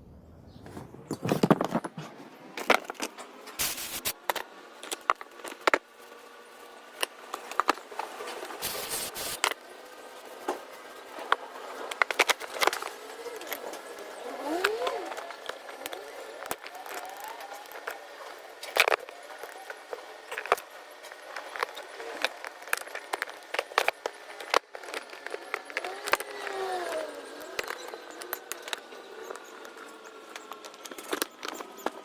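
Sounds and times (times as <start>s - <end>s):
metal tools clicking and clinking: 21.4s - 32.0s.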